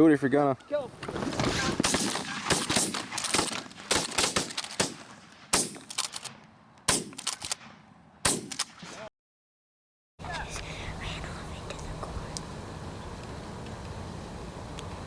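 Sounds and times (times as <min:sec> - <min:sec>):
shotgun fire: 0:01.8 - 0:09.1.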